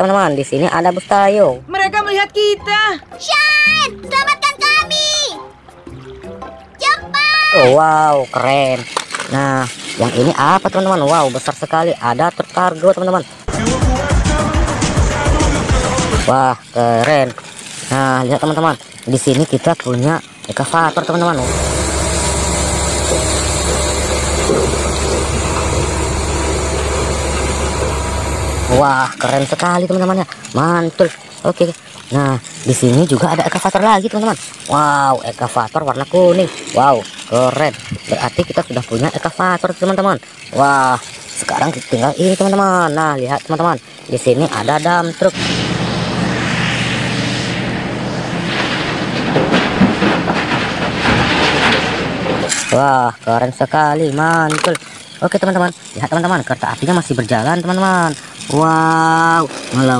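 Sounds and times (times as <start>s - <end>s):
toy train mechanical hum: 7.1s - 13.5s, 15.2s - 45.4s, 52.4s - 59.9s
train wheel clatter: 15.7s - 45.3s
diesel engine rumbling: 21.2s - 29.4s, 45.2s - 52.5s.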